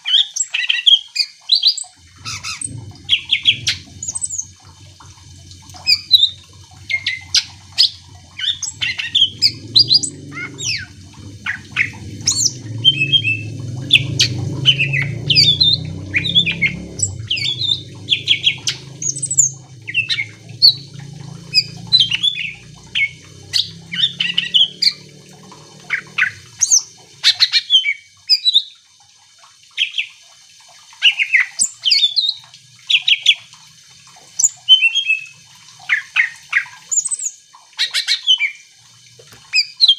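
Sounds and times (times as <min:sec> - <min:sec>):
low rumble: 0:02.0 - 0:27.2.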